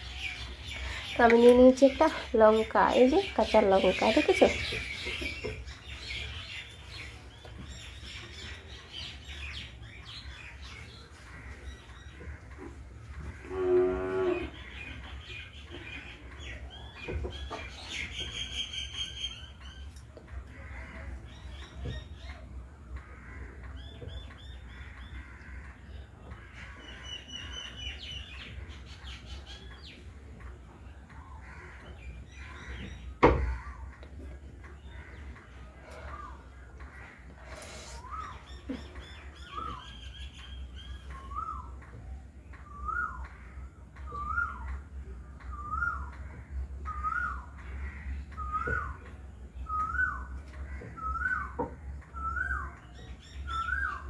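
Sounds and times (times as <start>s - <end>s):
small birds chirping: 0.0s - 54.0s
crows cawing: 23.0s - 23.7s, 24.8s - 27.1s, 47.7s - 48.4s.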